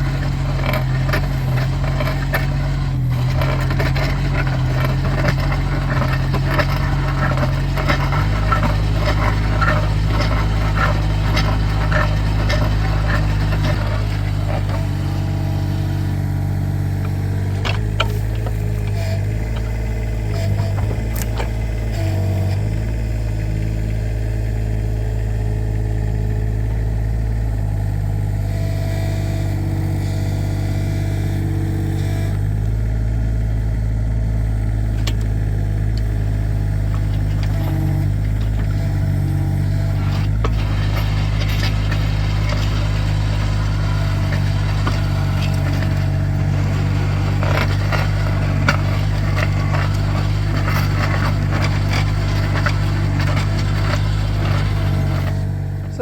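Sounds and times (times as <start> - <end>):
stony ground rattling and crackling: 0.0 - 24.5, 29.9 - 56.0
diesel engine running: 0.0 - 56.0.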